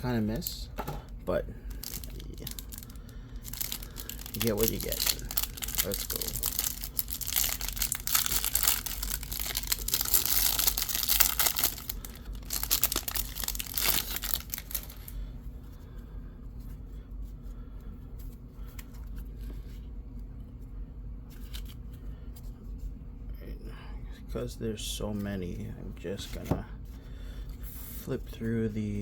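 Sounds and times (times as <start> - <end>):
wrapper tearing and crinkling: 1.7 - 15.1.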